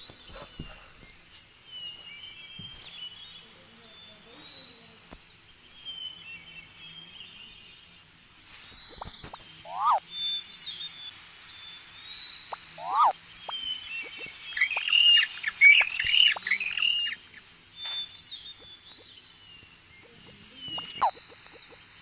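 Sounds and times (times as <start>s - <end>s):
bird chirp: 0.0s - 22.0s
outdoor ambience hiss: 0.0s - 22.0s
bird squawking calls: 9.0s - 10.0s, 12.5s - 17.3s, 20.7s - 21.8s.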